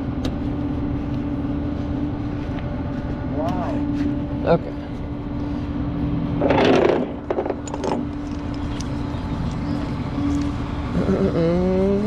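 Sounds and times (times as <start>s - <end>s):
short noisy rattle: 6.4s - 8.9s.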